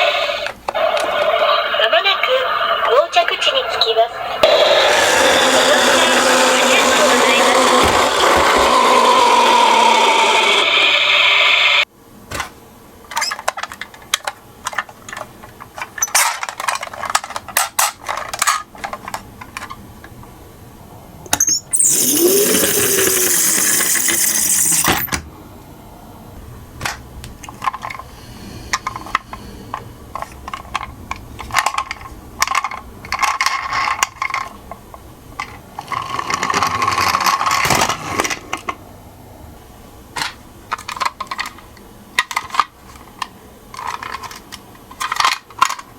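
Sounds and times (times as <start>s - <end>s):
toy cars clicking and clattering: 13.1s - 19.8s, 21.8s - 25.1s, 26.8s - 28.1s, 28.7s - 34.8s, 35.4s - 38.8s, 40.2s - 45.9s
loud hissing noise: 21.7s - 25.0s.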